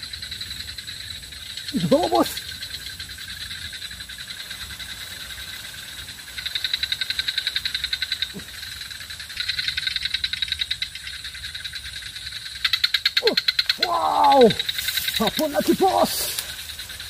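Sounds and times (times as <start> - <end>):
high animal drone: 13.2 - 16.5.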